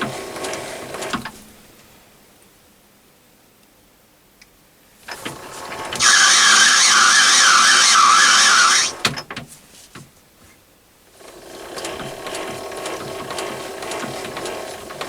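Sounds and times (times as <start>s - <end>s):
lathe gears clicking and rattling: 5.1s - 9.4s, 11.1s - 15.0s.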